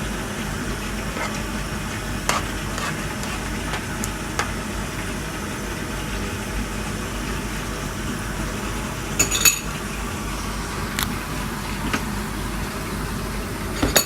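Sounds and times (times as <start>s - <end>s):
utensil clinking against cookware: 9.2s - 9.7s.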